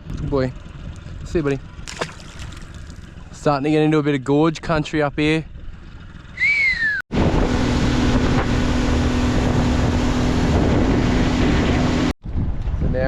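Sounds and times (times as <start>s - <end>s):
wind noise on microphone: 0.0s - 1.9s, 6.5s - 13.0s
outboard motor running: 0.0s - 12.1s
falling whistle: 6.4s - 7.0s.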